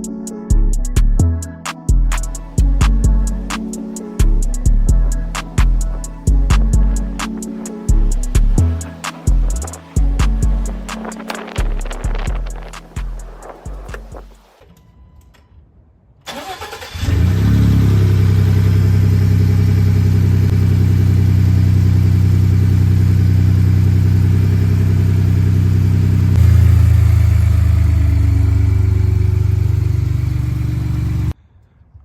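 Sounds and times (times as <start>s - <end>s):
pickup engine starting and idling: 16.3s - 31.4s.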